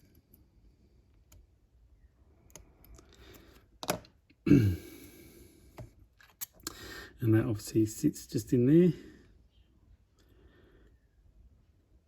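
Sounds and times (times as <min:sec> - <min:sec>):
small plastic parts clicking and tapping: 0:02.4 - 0:04.4.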